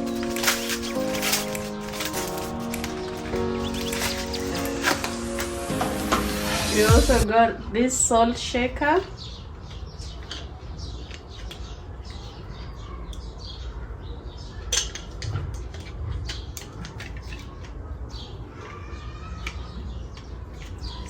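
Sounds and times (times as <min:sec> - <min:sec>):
packaging rustling: 0:00.0 - 0:06.9.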